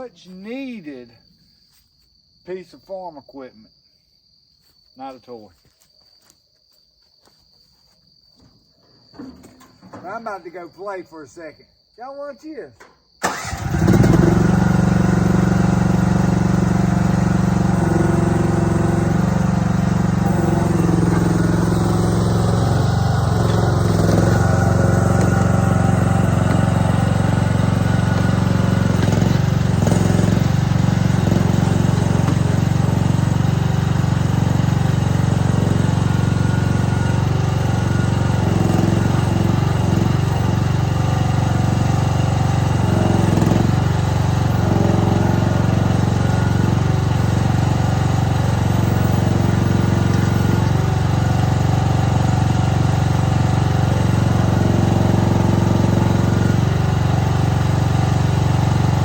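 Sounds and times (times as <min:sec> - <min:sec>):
excavator engine running: 0:13.3 - 0:59.0.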